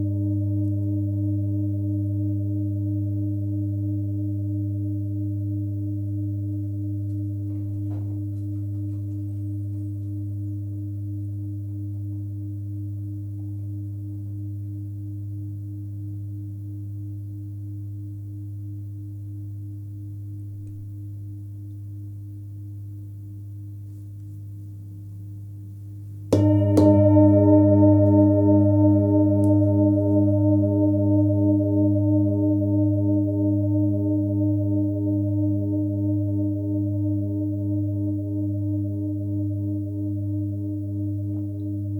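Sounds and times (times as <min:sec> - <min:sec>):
singing bowl being struck: 0:26.3 - 0:41.9
singing bowl ringing: 0:26.3 - 0:41.9.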